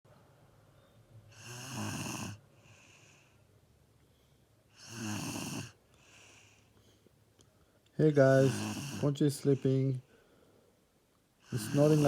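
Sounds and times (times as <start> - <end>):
loud rattling snoring: 1.4 - 2.4, 4.8 - 5.8, 8.3 - 9.2, 11.5 - 12.0
soft breath out: 2.5 - 4.5, 5.9 - 7.8.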